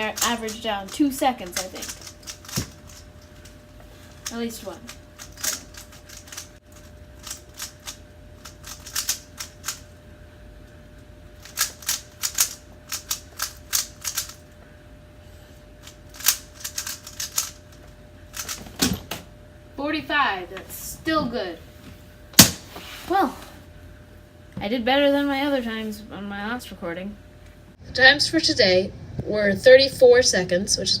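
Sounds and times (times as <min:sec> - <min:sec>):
faint steady hum: 0:00.0 - 0:31.0
puzzle cube plastic clicks: 0:00.1 - 0:03.5, 0:04.2 - 0:09.8, 0:11.4 - 0:14.4, 0:15.8 - 0:17.6, 0:18.4 - 0:18.6.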